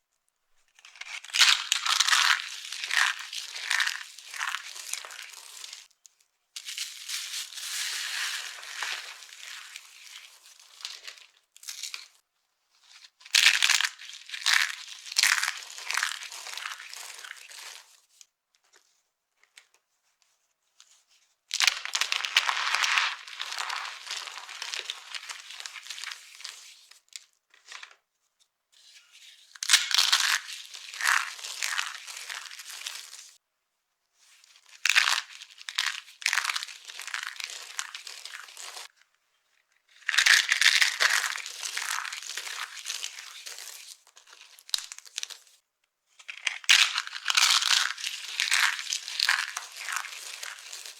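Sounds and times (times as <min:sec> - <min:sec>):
dry soap crunching: 0:00.8 - 0:05.9, 0:06.6 - 0:12.1, 0:13.3 - 0:18.0, 0:21.6 - 0:26.7, 0:29.6 - 0:33.4, 0:34.6 - 0:38.9, 0:39.9 - 0:45.5, 0:46.2 - 0:50.9.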